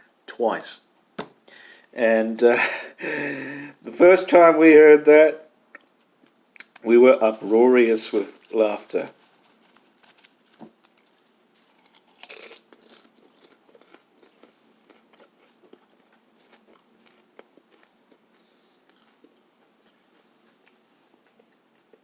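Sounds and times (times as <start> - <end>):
person chewing quietly: 5.7 - 7.5, 8.1 - 22.0
biting crunchy snack: 11.4 - 21.6.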